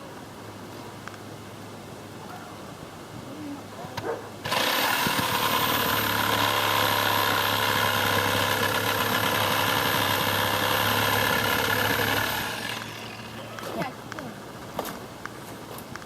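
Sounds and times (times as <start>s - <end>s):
power saw cutting wood: 4.4s - 13.7s.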